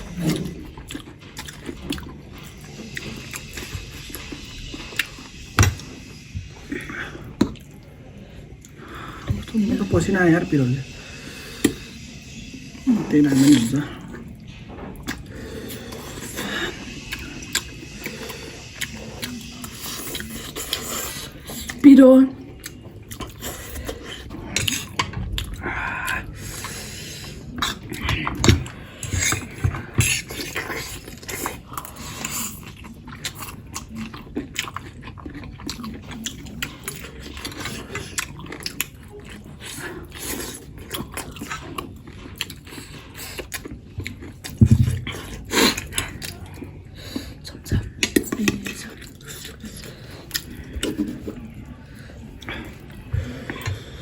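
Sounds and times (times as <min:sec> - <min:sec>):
people chewing and eating: 0:00.0 - 0:54.0.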